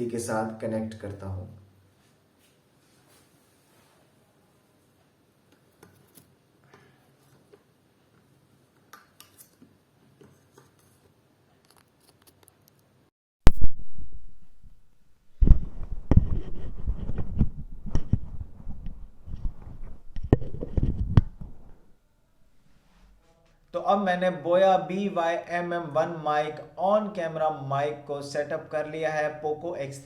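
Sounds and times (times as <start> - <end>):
microphone handling noise: 13.5 - 21.8.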